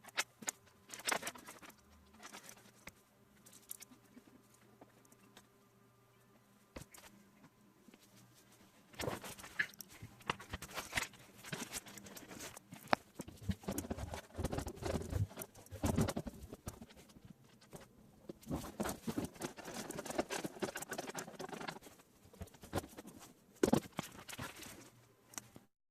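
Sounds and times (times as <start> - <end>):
computer parts clicking and rustling: 0.0 - 5.5, 9.0 - 25.7.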